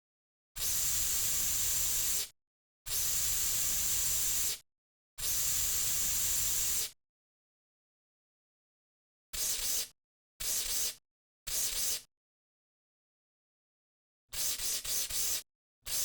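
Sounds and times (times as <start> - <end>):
aerosol can spraying: 9.4 - 12.0, 14.4 - 16.0.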